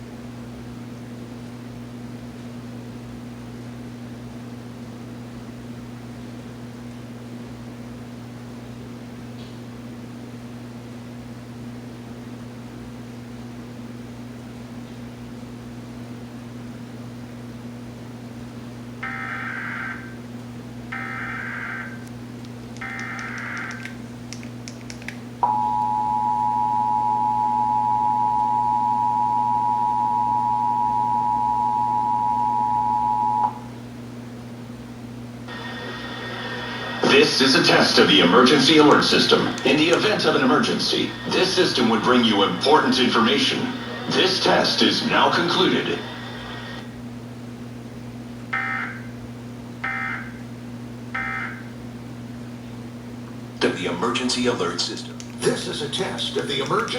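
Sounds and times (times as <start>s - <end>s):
two-tone alarm: 19.0s - 20.2s, 20.9s - 22.0s, 22.8s - 23.9s, 25.4s - 33.7s, 48.5s - 49.1s, 49.8s - 50.4s, 51.1s - 51.7s
low hum: 25.4s - 33.8s, 35.5s - 47.0s.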